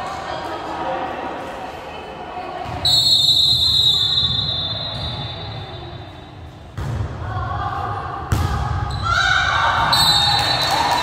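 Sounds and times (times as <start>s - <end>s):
volleyball thump: 6.7s - 7.2s, 8.3s - 8.8s.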